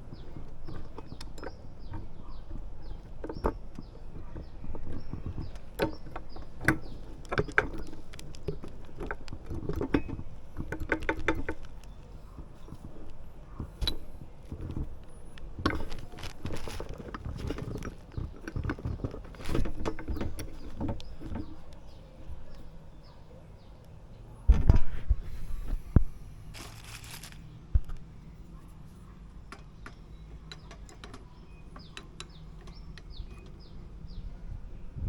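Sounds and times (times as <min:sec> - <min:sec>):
hand tools clicking and knocking: 0:00.0 - 0:22.7.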